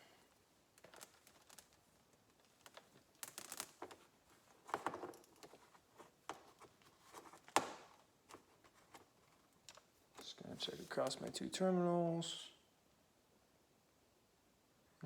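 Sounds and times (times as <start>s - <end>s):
multimeter leads clicking and rustling: 0.8s - 10.3s.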